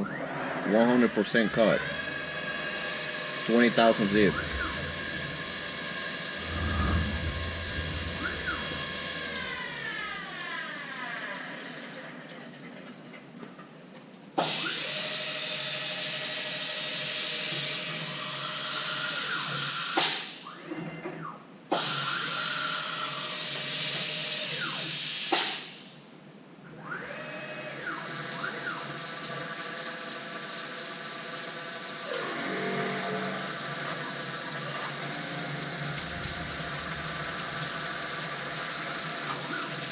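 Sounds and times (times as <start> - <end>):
milling machine whine: 0.0 - 12.0, 26.8 - 39.9
hissing cutting passes: 2.1 - 9.7
sharp squeal: 3.6 - 9.8.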